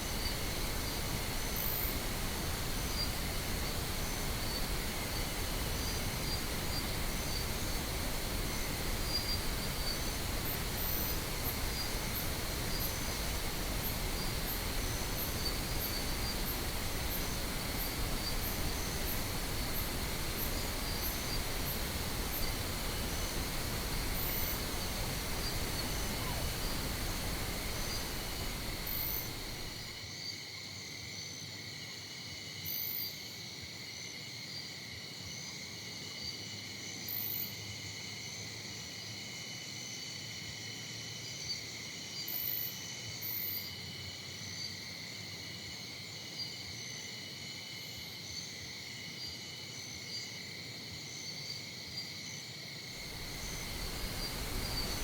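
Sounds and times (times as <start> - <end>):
insects chirring: 0.0 - 30.0, 52.9 - 55.0
pink noise hissing: 0.0 - 30.0, 53.0 - 55.0.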